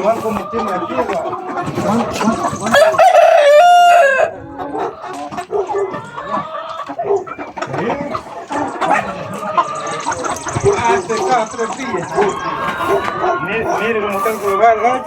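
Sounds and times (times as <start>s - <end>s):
chickens clucking: 0.0s - 15.0s
rooster crowing: 2.2s - 4.3s, 8.6s - 13.3s.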